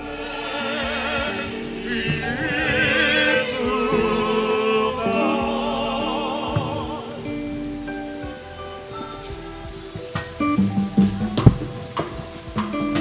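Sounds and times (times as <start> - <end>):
person singing with vibrato: 0.0 - 8.6
sustained keyboard chords: 0.0 - 13.0.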